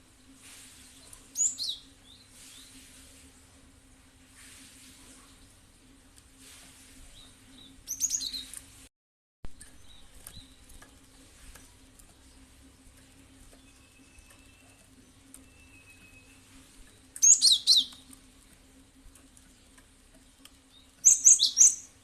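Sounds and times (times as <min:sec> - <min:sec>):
bird chirping: 0:00.9 - 0:02.8, 0:07.1 - 0:08.6, 0:09.6 - 0:12.5, 0:13.2 - 0:18.2, 0:20.7 - 0:22.0.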